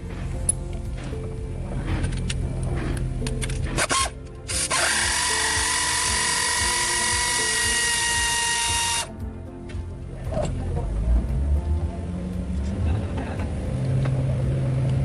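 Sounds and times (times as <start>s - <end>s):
power tool motor whirring: 3.8s - 9.1s.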